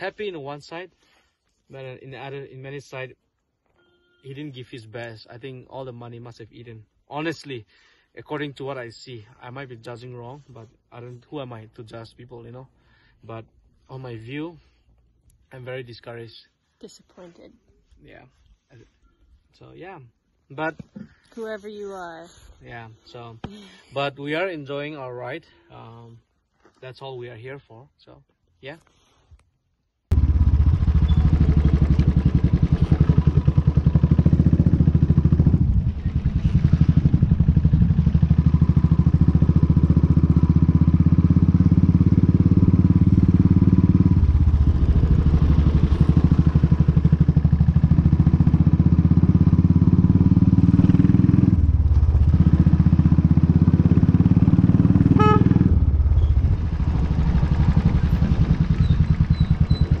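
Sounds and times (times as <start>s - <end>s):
brief high tone: 3.7s - 4.6s
motorcycle engine running: 30.1s - 60.0s.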